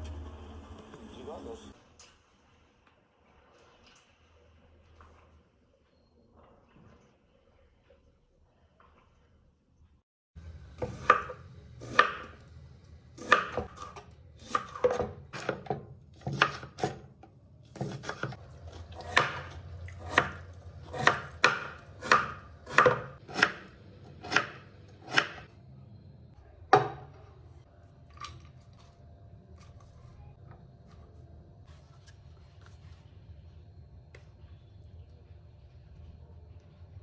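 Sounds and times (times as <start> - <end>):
knife chopping on cutting board: 10.8 - 12.4, 13.2 - 17.1, 17.7 - 18.4, 19.0 - 25.4.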